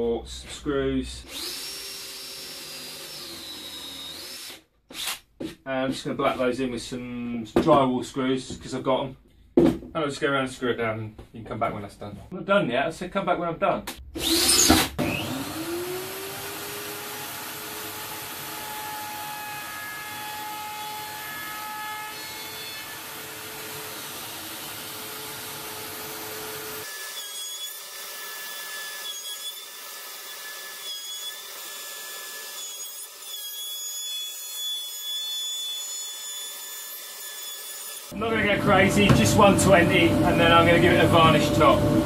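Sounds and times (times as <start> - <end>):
power sander on wood: 14.1 - 33.3.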